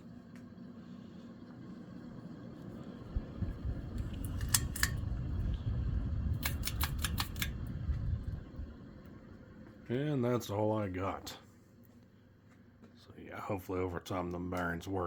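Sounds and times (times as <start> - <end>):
low rumble: 2.0 - 10.8
sharp clicks: 6.3 - 7.7.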